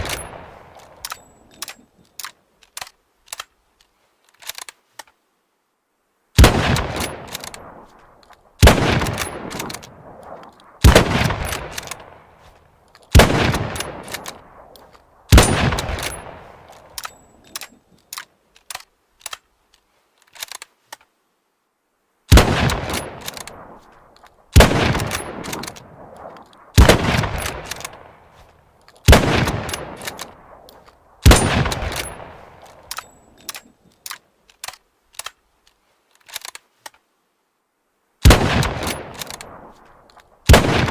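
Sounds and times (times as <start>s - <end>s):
rifle shots with echo: 0.0s - 1.2s, 6.4s - 8.0s, 8.6s - 12.4s, 13.1s - 17.0s, 22.3s - 28.3s, 29.0s - 33.5s, 38.2s - 40.9s
small metallic clicks: 0.0s - 5.2s, 6.8s - 10.8s, 11.4s - 21.2s, 22.6s - 37.1s, 38.8s - 40.4s.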